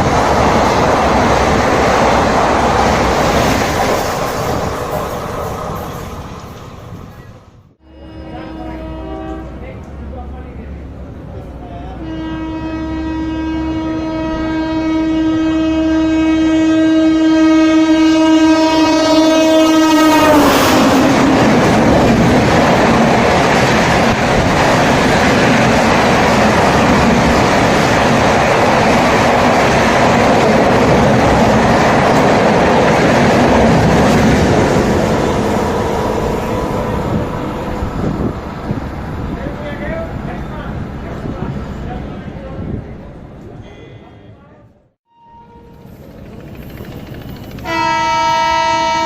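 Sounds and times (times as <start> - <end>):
train coaches rushing past: 0.0 - 12.0, 19.1 - 44.4, 45.4 - 49.0
locomotive horn blast: 7.8 - 9.8, 11.9 - 21.5, 45.1 - 45.9, 47.6 - 49.0.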